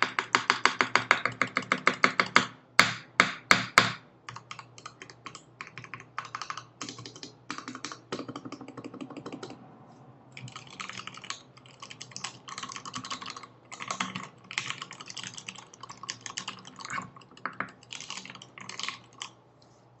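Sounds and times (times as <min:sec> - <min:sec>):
mechanical keyboard typing: 0:00.0 - 0:02.5, 0:04.3 - 0:09.6, 0:10.4 - 0:19.3.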